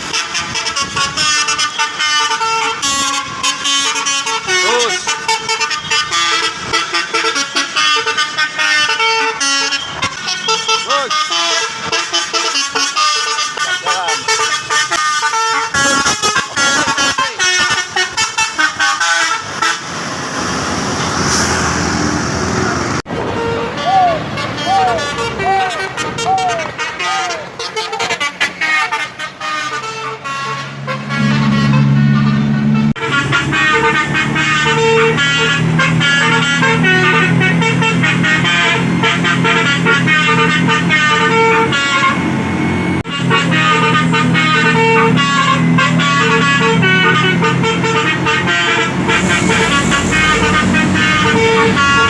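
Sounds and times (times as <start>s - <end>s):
bus horn melody: 0.0s - 20.0s, 22.5s - 52.0s
low drone: 48.4s - 52.0s
steady rushing noise: 48.8s - 52.0s.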